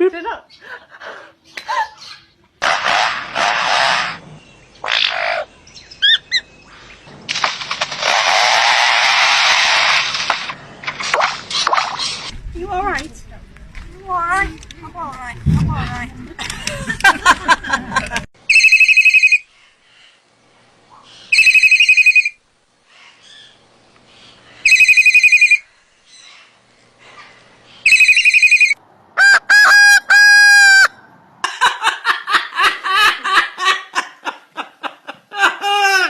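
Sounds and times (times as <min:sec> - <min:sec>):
bursts of laughter: 0:16.3 - 0:18.3, 0:29.5 - 0:36.0
warbling telephone ring: 0:18.5 - 0:19.4, 0:21.4 - 0:22.4, 0:24.7 - 0:25.6, 0:27.9 - 0:28.8.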